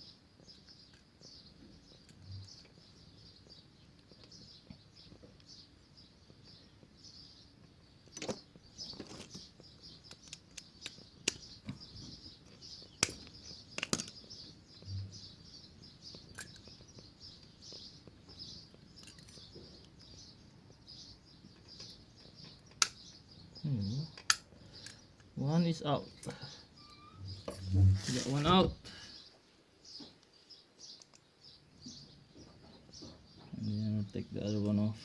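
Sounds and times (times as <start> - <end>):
birds chirping: 0.0 - 35.0
metal tool clicks and taps: 13.0 - 14.2, 22.8 - 23.0, 24.2 - 25.3.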